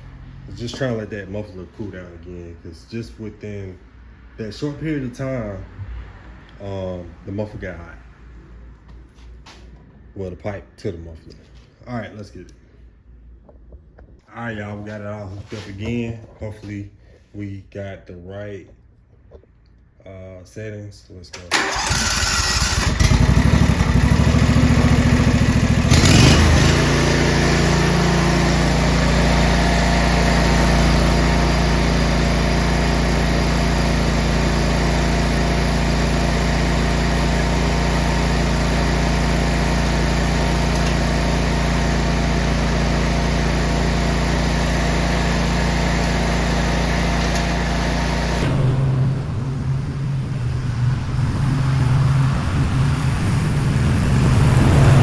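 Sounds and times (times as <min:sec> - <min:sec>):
lawn mower engine running: 0:21.4 - 0:55.0.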